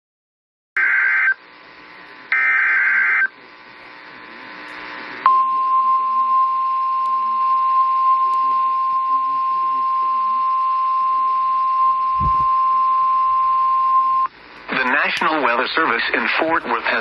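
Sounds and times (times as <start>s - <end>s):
steady warning alarm tone: 5.2s - 14.3s
warbling digital data tones: 12.0s - 12.7s
faint radio hiss: 14.4s - 17.0s.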